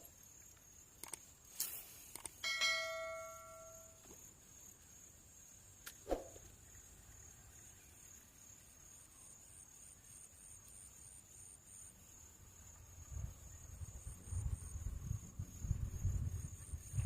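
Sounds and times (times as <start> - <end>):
insects droning and chirping: 0.0 - 17.0
sharp click: 1.0 - 2.4.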